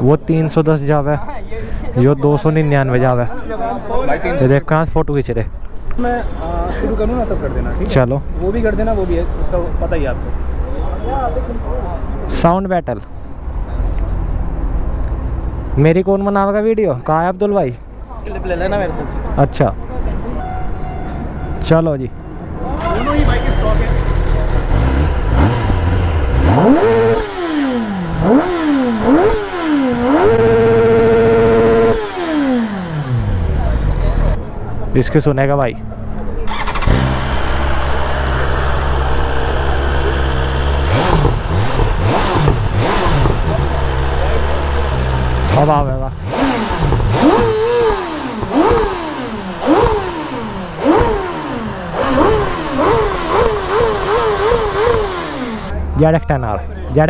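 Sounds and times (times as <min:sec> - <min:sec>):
motorcycle engine revving: 0:22.6 - 0:34.6, 0:36.4 - 0:56.0.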